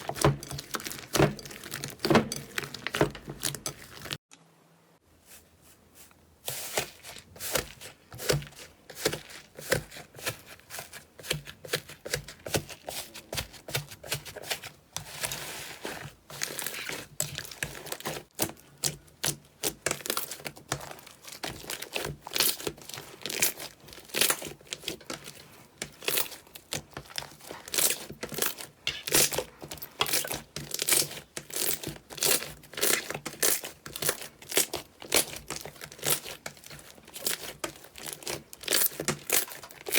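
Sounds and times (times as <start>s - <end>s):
slime crackling and popping: 30.0s - 39.9s.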